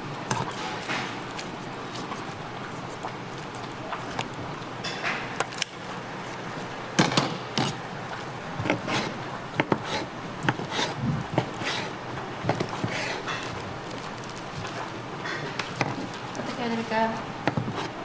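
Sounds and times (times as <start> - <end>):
steady background hum: 0.0 - 18.0
utensils and dishes clinking: 4.8 - 5.5, 12.5 - 13.6, 14.7 - 16.9.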